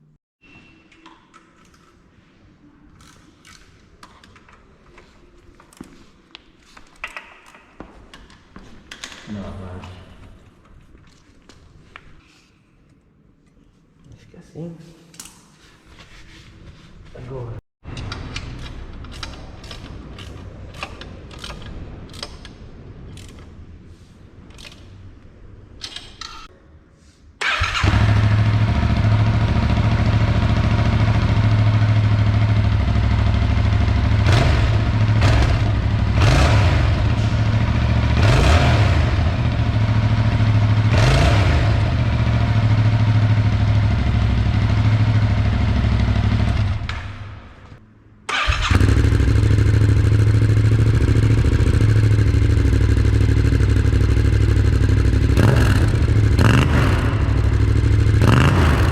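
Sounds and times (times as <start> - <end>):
motorcycle engine idling and revving: 27.4 - 47.4, 48.3 - 58.9.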